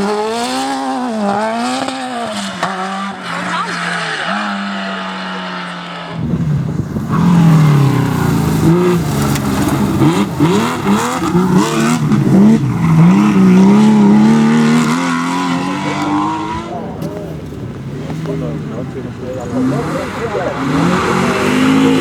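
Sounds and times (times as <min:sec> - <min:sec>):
car engine revving hard: 0:00.0 - 0:22.0
steady engine note: 0:06.1 - 0:22.0.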